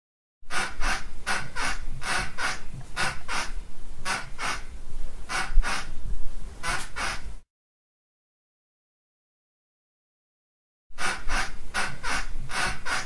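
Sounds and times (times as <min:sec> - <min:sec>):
bed springs squeaking: 0:00.5 - 0:03.5, 0:06.6 - 0:07.3, 0:11.0 - 0:13.0.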